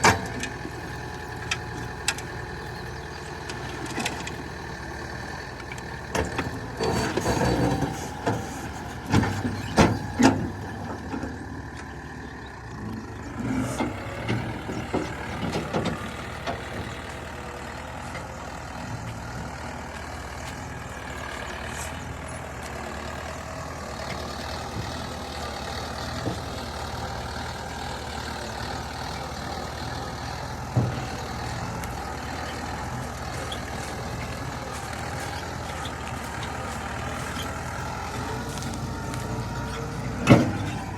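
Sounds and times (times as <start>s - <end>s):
diesel machinery engine drone: 0.0s - 40.9s.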